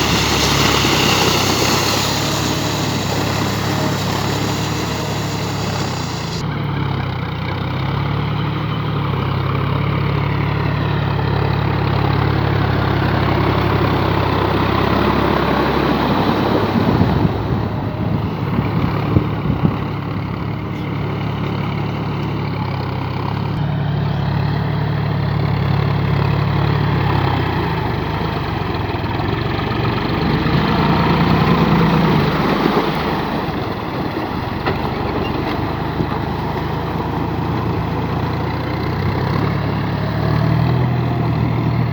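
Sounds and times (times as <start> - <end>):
tractor diesel engine running: 0.0 - 41.9.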